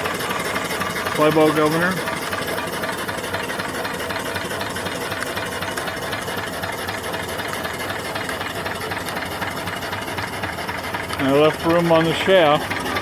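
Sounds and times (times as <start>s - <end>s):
steam engine running: 0.0s - 13.0s.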